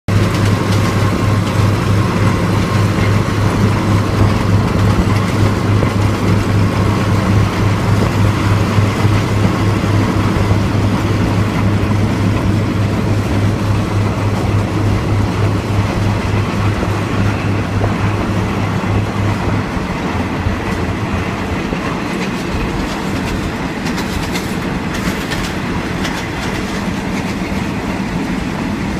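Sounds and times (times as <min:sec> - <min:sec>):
moving train rumble: 0:00.0 - 0:28.9
strong low drone: 0:00.1 - 0:28.9.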